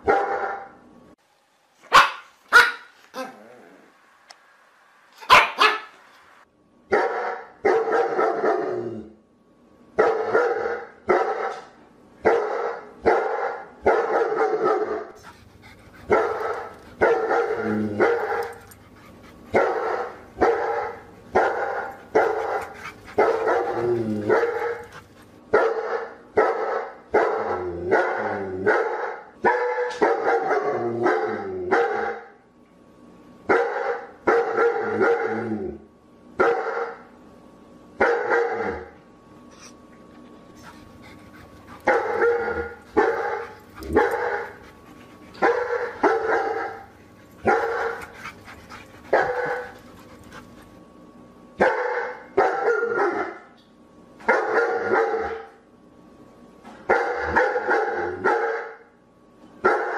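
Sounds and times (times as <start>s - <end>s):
dog barking: 0.0s - 0.7s, 1.9s - 3.3s, 5.2s - 6.0s, 6.9s - 8.7s, 10.0s - 15.2s, 16.1s - 18.6s, 19.5s - 32.3s, 33.5s - 35.4s, 36.4s - 37.1s, 38.0s - 38.9s, 41.7s - 44.6s, 45.4s - 48.1s, 49.0s - 49.8s, 51.6s - 53.5s, 54.2s - 55.6s, 56.9s - 58.9s, 59.6s - 59.9s.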